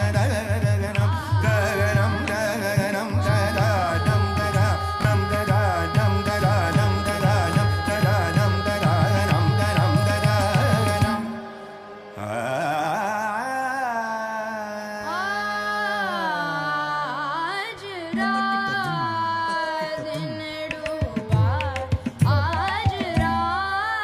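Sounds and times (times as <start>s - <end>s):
person singing long ornamented notes: 0.0s - 24.0s.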